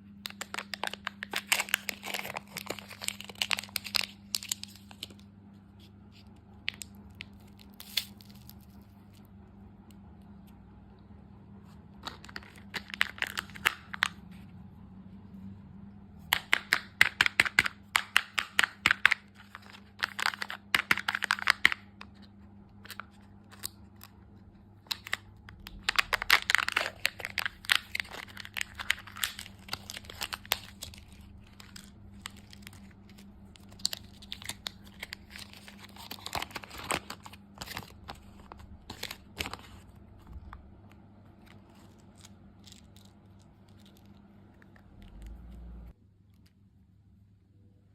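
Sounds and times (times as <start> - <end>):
faint low hum: 0.0 - 47.9
candy wrapper crinkling: 0.1 - 9.4, 11.9 - 14.4, 16.3 - 45.4.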